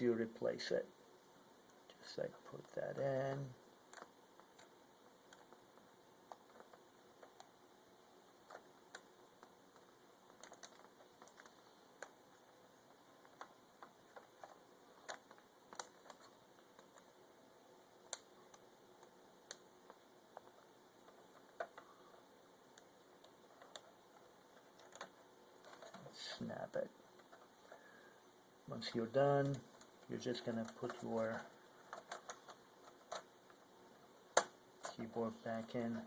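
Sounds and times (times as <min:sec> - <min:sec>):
small clicks and taps: 0:01.6 - 0:07.6, 0:08.4 - 0:17.2, 0:18.0 - 0:22.0, 0:22.7 - 0:26.0, 0:29.4 - 0:33.6.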